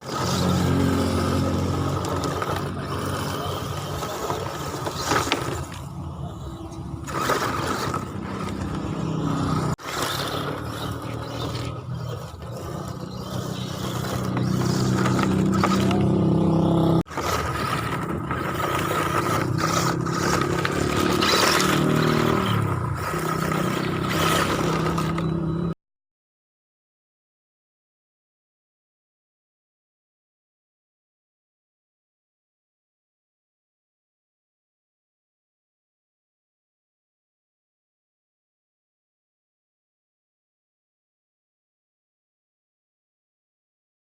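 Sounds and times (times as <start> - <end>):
tyres crunching on gravel: 0.0 - 25.4
electric motor whining: 0.0 - 25.7.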